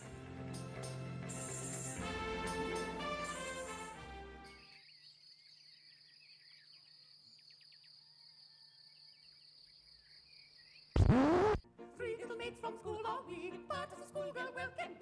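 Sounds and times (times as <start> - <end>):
orchestral music: 2.0 - 4.6.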